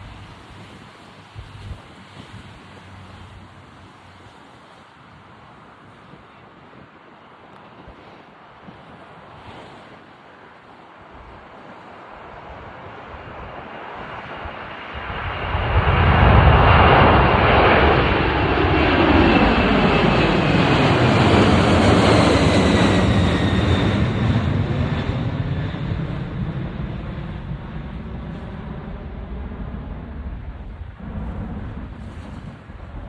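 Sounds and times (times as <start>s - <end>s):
jet plane taking off: 12.2s - 33.0s.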